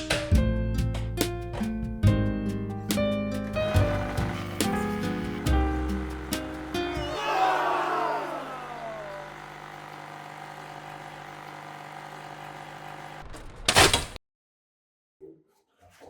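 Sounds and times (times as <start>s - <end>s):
coffee machine humming: 3.6s - 13.2s.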